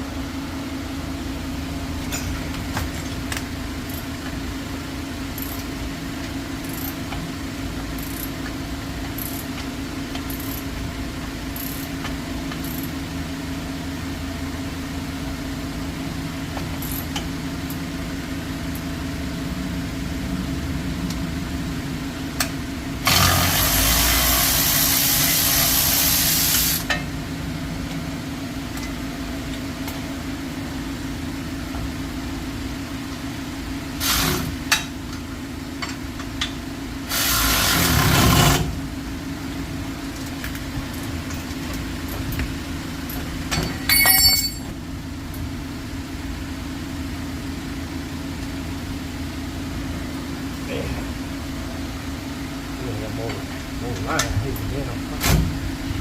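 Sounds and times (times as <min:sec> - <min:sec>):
engine-like hum: 0:00.0 - 0:56.0
loud steady hiss: 0:23.0 - 0:26.9
metal clinks of hand tools: 0:43.5 - 0:44.7.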